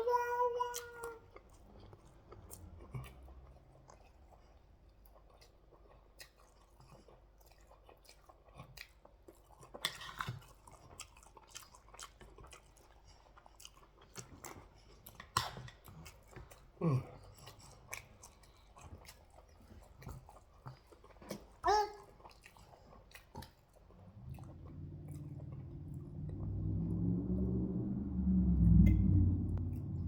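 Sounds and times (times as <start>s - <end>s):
close chewing with mouth clicks: 0.8s - 26.4s
short downward-gliding sound: 24.1s - 30.0s.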